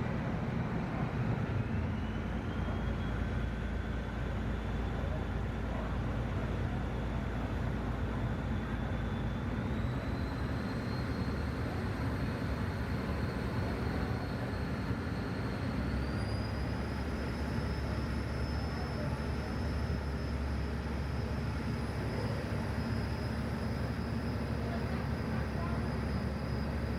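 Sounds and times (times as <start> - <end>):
ferry engine rumble: 0.0 - 26.9
faint high whine: 0.9 - 26.9.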